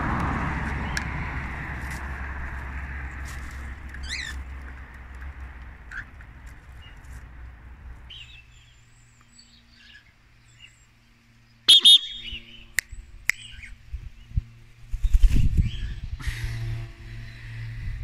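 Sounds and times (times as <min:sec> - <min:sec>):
cockatiel chirping and calling: 0:04.0 - 0:04.4, 0:11.7 - 0:12.6.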